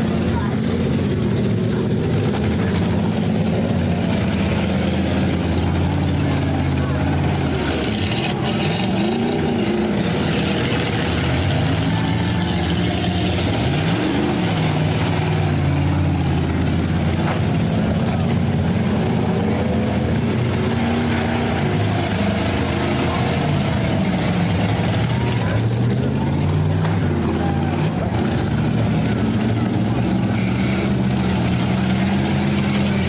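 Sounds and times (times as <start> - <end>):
car engines revving: 0.0 - 33.0.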